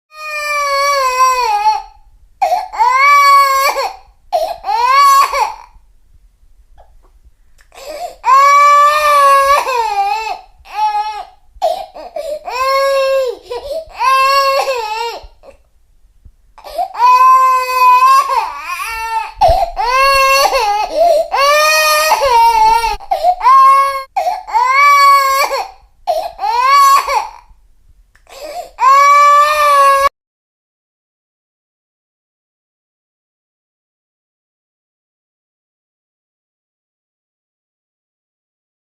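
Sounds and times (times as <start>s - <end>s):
baby crying: 0.1s - 5.8s, 7.7s - 15.6s, 16.6s - 27.5s, 28.3s - 30.1s.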